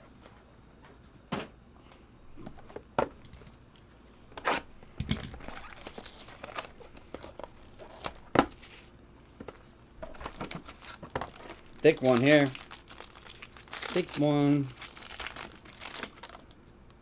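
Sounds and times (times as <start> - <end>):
plastic wrapper crinkling and tearing: 5.2 - 8.9, 10.1 - 16.6.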